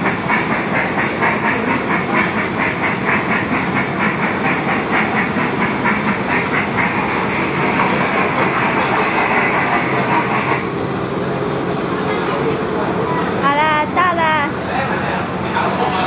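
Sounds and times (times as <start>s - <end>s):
ride-on train hissing chuff: 0.0s - 13.4s, 14.5s - 16.0s
steady rumble: 0.0s - 16.0s.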